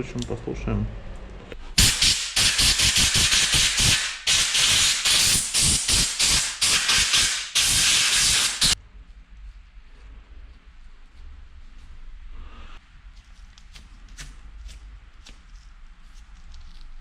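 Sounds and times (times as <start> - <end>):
spray hissing in bursts: 1.8 - 8.8.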